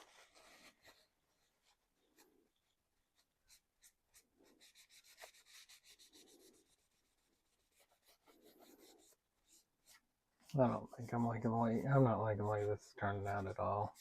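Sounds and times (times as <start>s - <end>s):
small brush rubbing on plastic: 0.0s - 14.0s.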